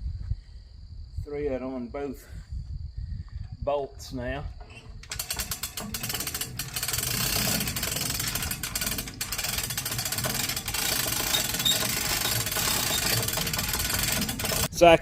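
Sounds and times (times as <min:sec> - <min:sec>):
mechanical clatter of tool turning bolts: 0:05.0 - 0:14.7.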